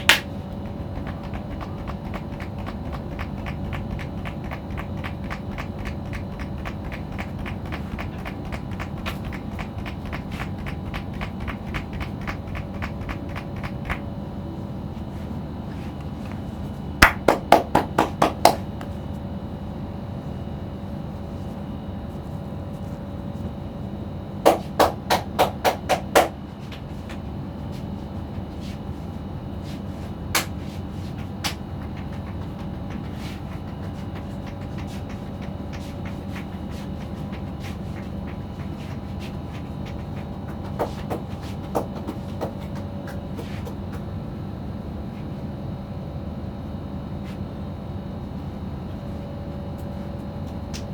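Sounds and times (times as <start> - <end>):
rapid taps on head: 0.0 - 14.1, 17.0 - 19.0, 24.4 - 27.2, 30.3 - 44.1
steady background hum: 0.0 - 50.9.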